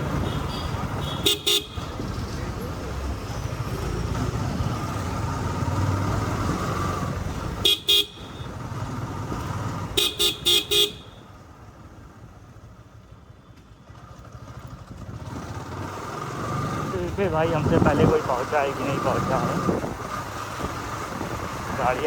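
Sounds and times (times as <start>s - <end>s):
motorcycle riding in traffic: 0.0s - 22.0s
vehicle horn tooting: 0.1s - 1.9s, 7.6s - 8.6s, 10.0s - 11.3s.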